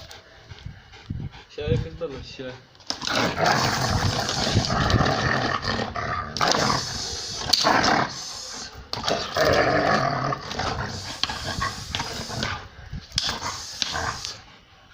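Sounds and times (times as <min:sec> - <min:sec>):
dog growling: 0:02.9 - 0:14.5.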